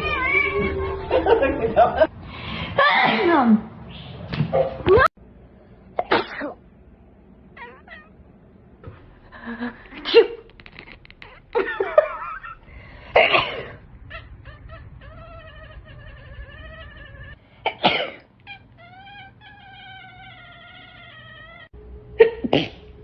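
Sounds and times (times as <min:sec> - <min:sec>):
people sneezing: 0:22.2 - 0:22.8.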